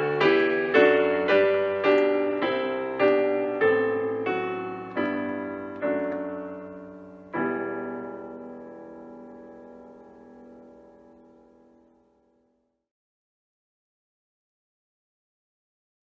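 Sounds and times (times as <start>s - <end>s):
piano playing hymn chords: 0.0s - 12.1s.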